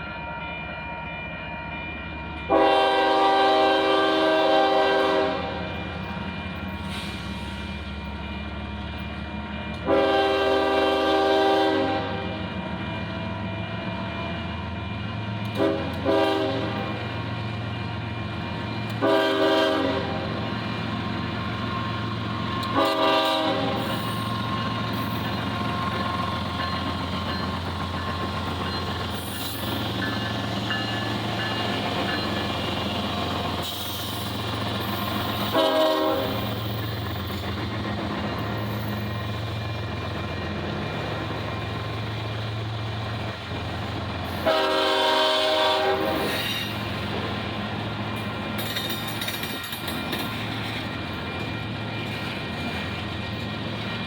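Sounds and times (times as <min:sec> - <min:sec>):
train low rumble: 0:00.0 - 0:54.0
locomotive air horn blasts: 0:02.5 - 0:05.8, 0:09.8 - 0:12.4, 0:15.5 - 0:17.0, 0:19.0 - 0:20.4, 0:22.6 - 0:24.1, 0:35.4 - 0:36.5, 0:44.2 - 0:46.7.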